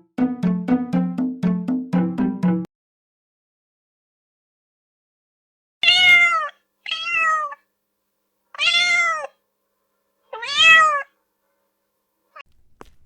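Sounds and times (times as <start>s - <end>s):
cat meowing: 5.8s - 7.6s, 8.6s - 9.4s, 10.3s - 11.1s.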